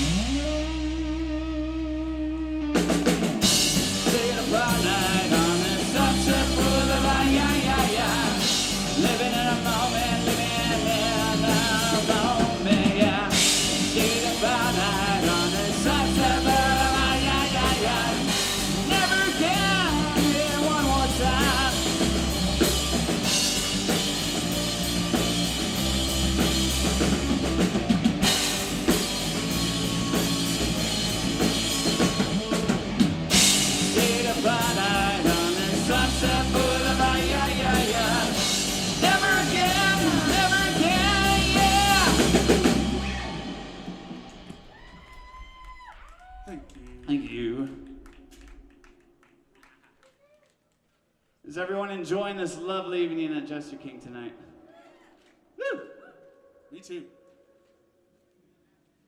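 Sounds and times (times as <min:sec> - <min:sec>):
drum kit beat: 0:00.0 - 0:01.4, 0:02.8 - 0:48.0
live rock band playing: 0:00.0 - 0:44.7.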